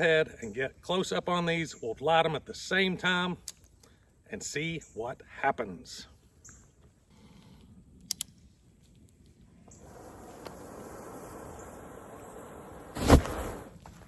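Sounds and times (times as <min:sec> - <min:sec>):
sharp clicks: 0:08.0 - 0:08.4
gunpowder hissing burn: 0:09.7 - 0:13.8.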